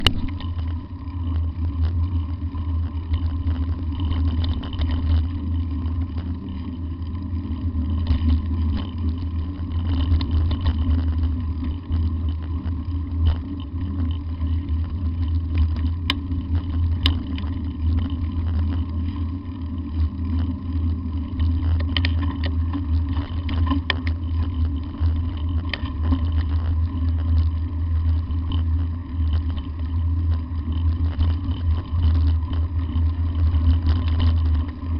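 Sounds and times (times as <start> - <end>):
clicks and rattles: 0.0 - 0.7, 3.1 - 5.3, 15.5 - 18.8, 21.3 - 27.2.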